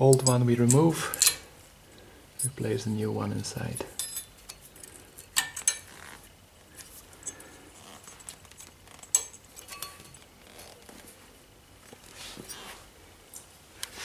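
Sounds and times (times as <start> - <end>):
metal clips clicking and snapping: 0.0 - 1.4.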